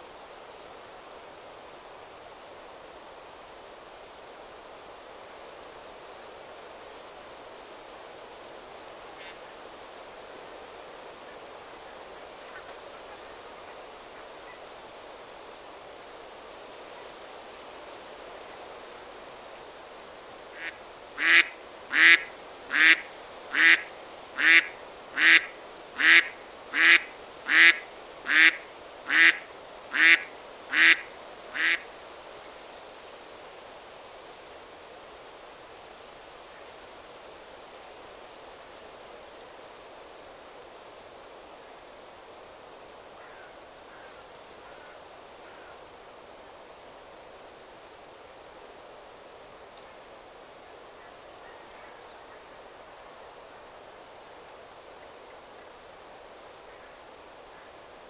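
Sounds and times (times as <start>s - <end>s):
wind in trees: 0.0s - 58.0s
duck quacking: 20.5s - 31.8s.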